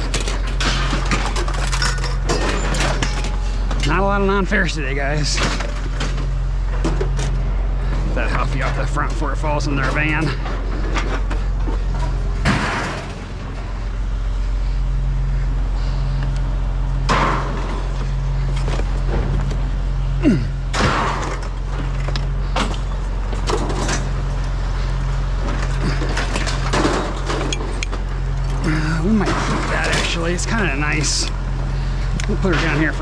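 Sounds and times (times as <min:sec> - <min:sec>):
scrap items clattering: 0:00.0 - 0:04.0, 0:05.2 - 0:13.9, 0:20.8 - 0:33.0
vehicle engine droning: 0:00.0 - 0:33.0.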